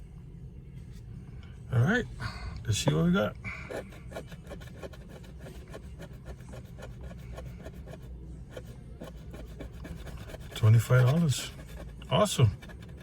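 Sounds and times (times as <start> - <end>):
scratch card being scratched: 3.7 - 13.0.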